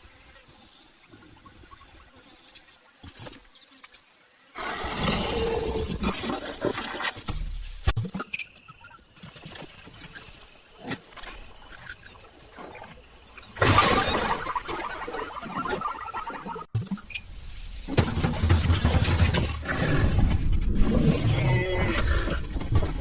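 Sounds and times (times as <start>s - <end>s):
insects chirring: 0.0s - 17.9s.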